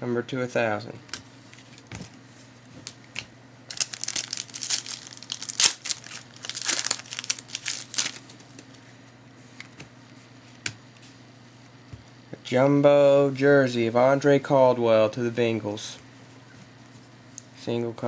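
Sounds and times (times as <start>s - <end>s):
foil wrapper crinkling and tearing: 3.7s - 8.8s.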